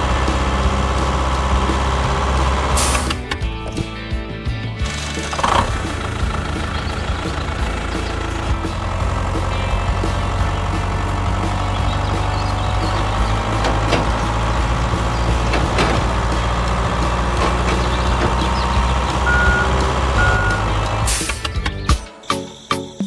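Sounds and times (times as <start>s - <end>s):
short beeps: 19.3s - 20.7s.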